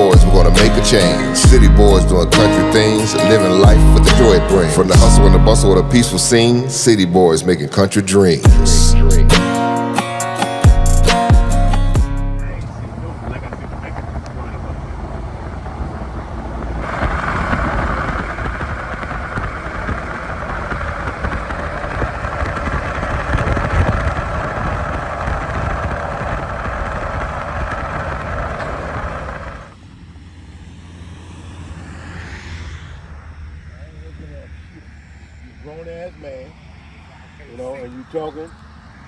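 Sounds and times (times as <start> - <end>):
low rumble: 12.4 - 37.6
rushing wind noise: 12.5 - 29.8.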